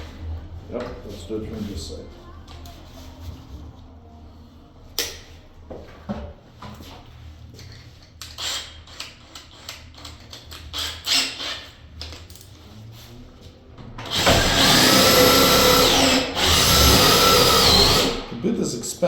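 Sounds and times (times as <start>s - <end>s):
electric drill boring: 14.1s - 18.3s.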